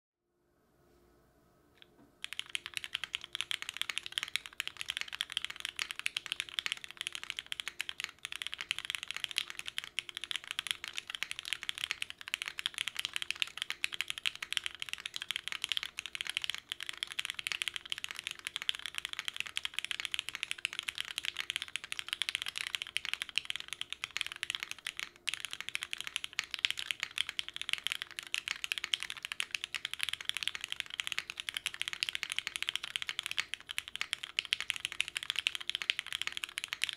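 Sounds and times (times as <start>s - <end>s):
fast mechanical keyboard typing: 2.2s - 36.9s.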